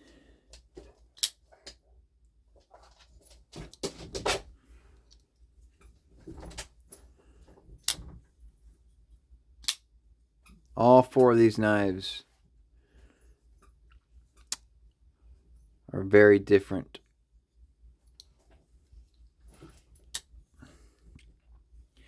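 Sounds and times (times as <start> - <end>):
folding knife metallic clicks: 1.2 - 1.4, 9.6 - 9.8.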